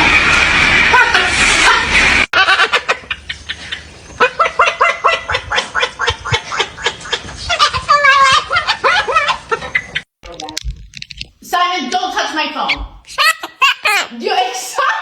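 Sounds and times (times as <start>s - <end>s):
parrot calling: 2.4s - 10.0s, 12.6s - 14.2s.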